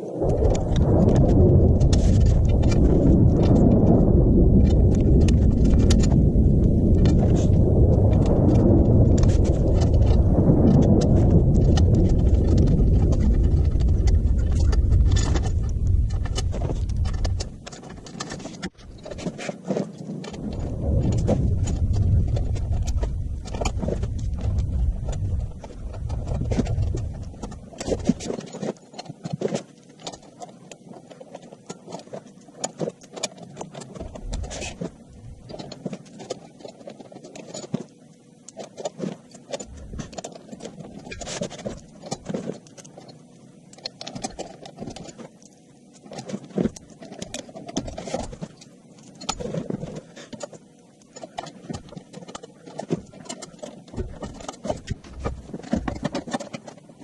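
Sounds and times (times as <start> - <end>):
tools and metal parts clattering: 0.4 - 57.0.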